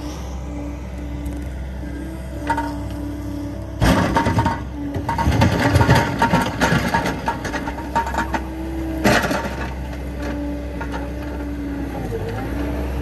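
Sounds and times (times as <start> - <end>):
tractor engine running: 0.0 - 13.0.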